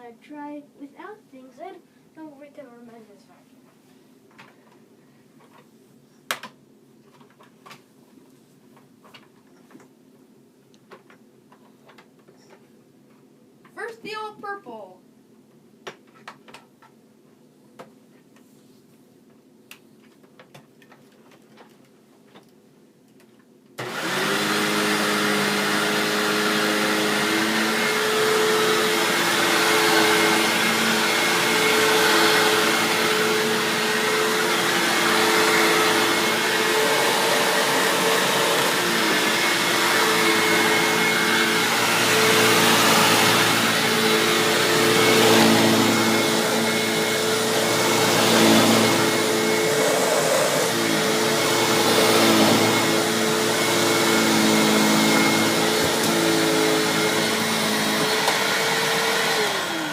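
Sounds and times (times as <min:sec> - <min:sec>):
vacuum cleaner running: 0:23.8 - 0:59.9.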